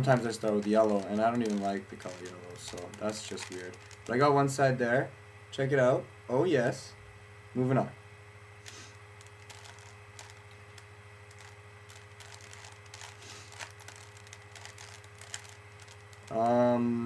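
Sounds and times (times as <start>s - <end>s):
rubik's cube clicking: 0.0s - 4.2s, 8.6s - 16.4s
low electrical hum: 0.0s - 17.0s.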